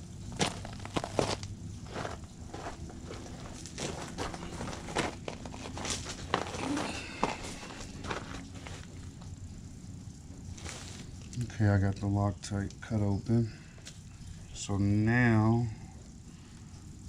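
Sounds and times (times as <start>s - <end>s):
plastic package crinkling: 0.4s - 9.2s.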